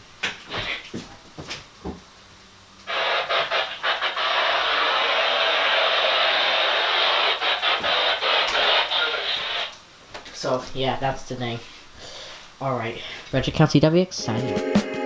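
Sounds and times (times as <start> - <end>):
radio static hiss: 2.8 - 14.7.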